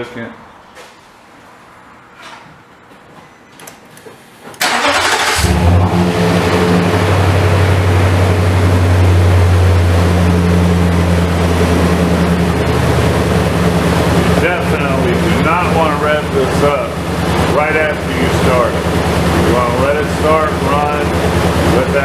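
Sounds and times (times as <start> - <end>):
engine idling: 4.6 - 22.0
starter cranking engine: 4.6 - 22.0.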